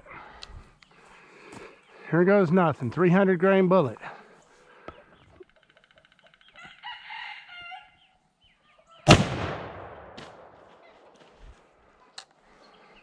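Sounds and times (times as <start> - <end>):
rooster crowing: 6.6 - 8.0
rifle shot with echo: 9.1 - 10.7.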